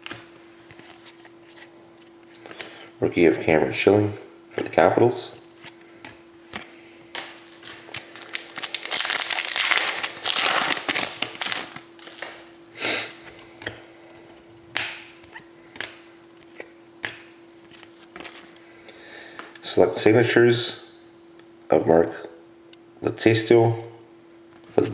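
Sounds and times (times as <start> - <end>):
faint steady hum: 0.0 - 24.9
cards and packaging rustling: 6.5 - 12.4, 15.8 - 18.6
cards clicking and tapping: 15.7 - 18.5.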